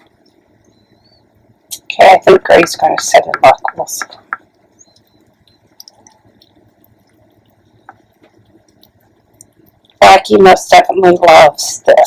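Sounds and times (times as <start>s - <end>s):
cat chewing and licking: 2.5s - 10.7s.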